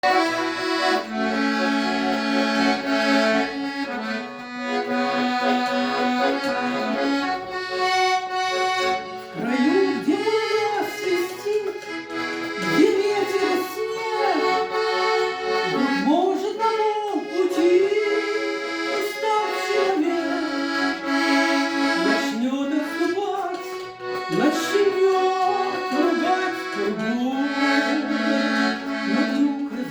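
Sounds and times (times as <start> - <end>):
accordion chords: 0.0 - 29.9
person singing: 8.3 - 29.9.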